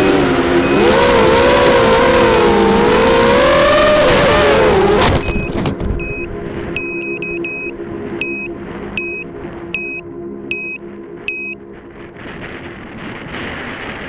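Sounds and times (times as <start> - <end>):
quadcopter motors whining: 0.0 - 11.6
short high beeps: 5.2 - 11.6.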